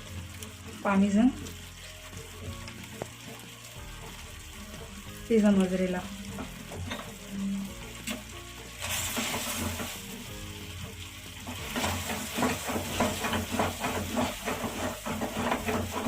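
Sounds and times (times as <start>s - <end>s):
food sizzling in a pan: 0.0s - 16.0s
spoon scraping a pan: 8.8s - 10.0s, 11.4s - 16.0s.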